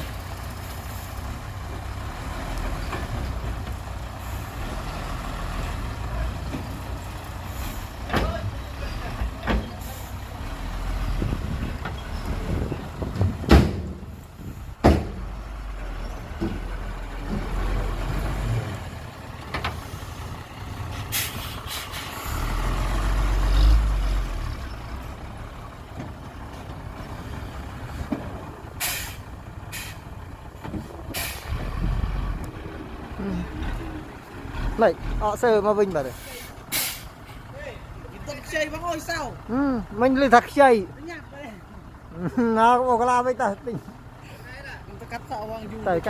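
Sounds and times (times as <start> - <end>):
heavy machinery engine rumble: 0.0 - 46.0
sharp knocks: 14.8 - 15.2.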